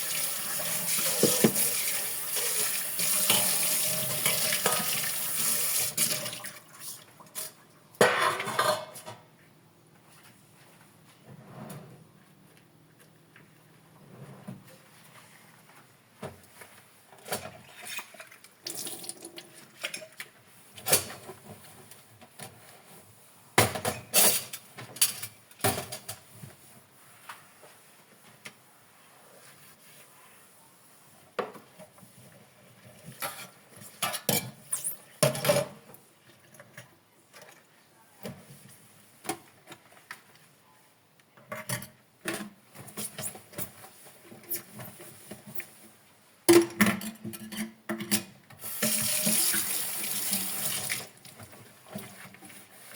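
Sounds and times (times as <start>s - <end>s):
dishes and cutlery clinking: 7.4s - 9.2s.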